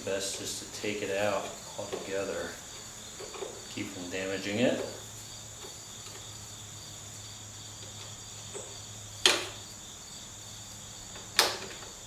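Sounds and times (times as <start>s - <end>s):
cricket trill: 0.0s - 12.0s.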